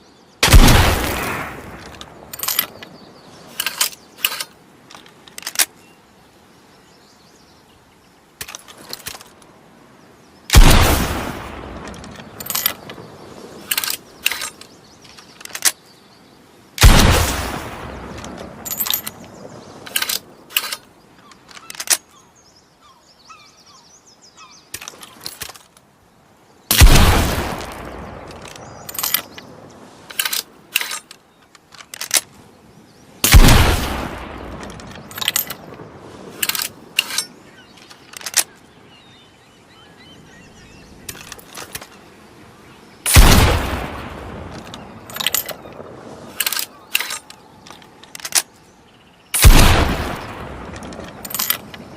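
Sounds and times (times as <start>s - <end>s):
shotgun blasts echoing: 0.4s - 1.8s, 10.5s - 11.6s, 16.8s - 18.1s, 26.7s - 28.1s, 33.2s - 34.6s, 43.1s - 44.3s, 49.4s - 50.8s
gun handling metallic clicks: 1.1s - 6.0s, 8.4s - 9.6s, 11.8s - 13.0s, 13.6s - 15.9s, 18.0s - 22.2s, 24.7s - 25.9s, 27.5s - 32.4s, 34.5s - 38.7s, 41.0s - 42.1s, 44.4s - 48.7s, 49.4s - 51.9s.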